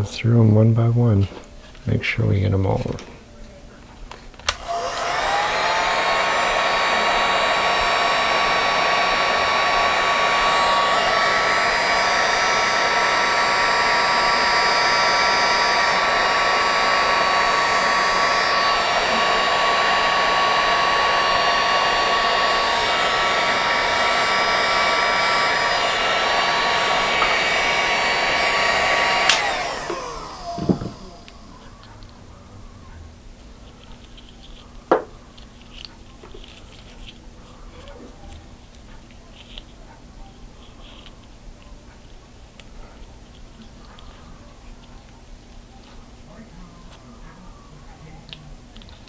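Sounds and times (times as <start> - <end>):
electric hot-air blower whining: 4.2 - 32.4.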